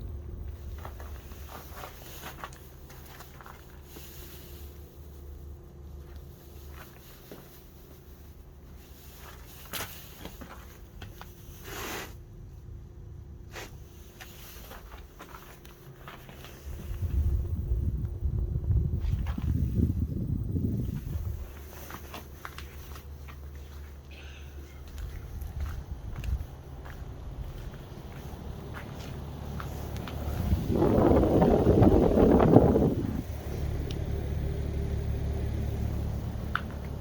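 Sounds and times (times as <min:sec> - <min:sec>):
light clicks and scuffs: 0:06.0 - 0:11.7, 0:13.5 - 0:17.4, 0:20.8 - 0:30.5
heat pump humming: 0:12.2 - 0:37.0.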